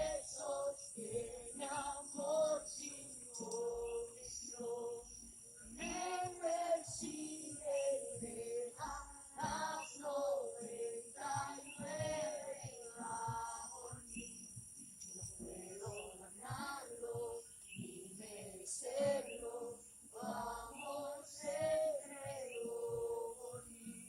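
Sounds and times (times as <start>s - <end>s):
music: 0.0s - 24.0s
voices singing worship song: 0.0s - 24.0s.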